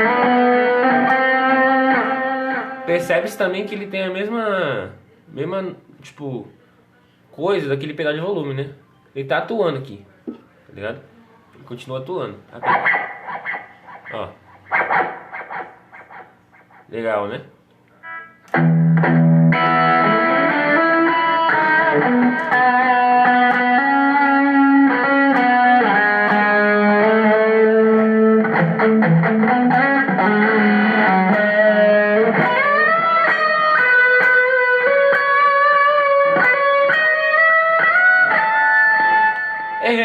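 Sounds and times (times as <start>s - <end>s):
electric guitar lead: 0.0s - 3.2s, 12.6s - 16.9s, 17.9s - 39.9s.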